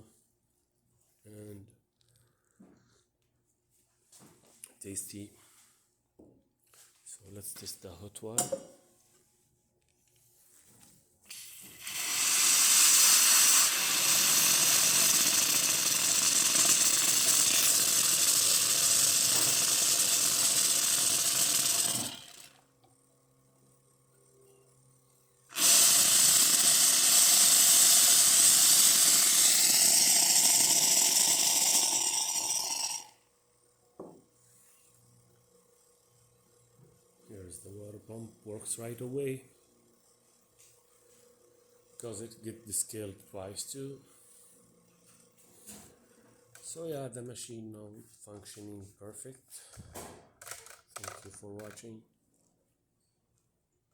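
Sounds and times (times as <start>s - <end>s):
hissing steam and water from tap: 11.3s - 16.2s, 25.6s - 33.0s
pump running: 11.3s - 22.6s, 25.5s - 33.1s.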